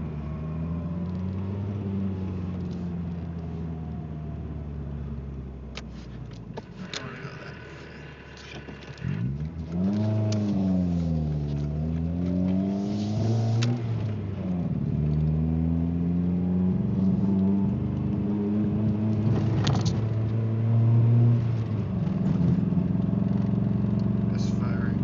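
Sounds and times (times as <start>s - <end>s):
car engine misfiring: 5.8s - 10.6s.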